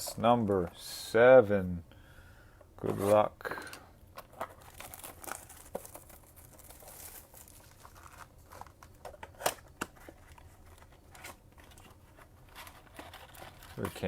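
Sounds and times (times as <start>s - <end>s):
packaging crinkling and tearing: 4.2s - 14.0s.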